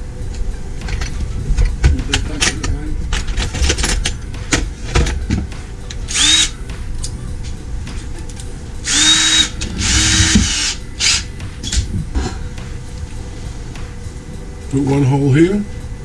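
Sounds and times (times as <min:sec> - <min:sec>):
electric drill whining: 0:06.1 - 0:06.6, 0:08.8 - 0:11.3.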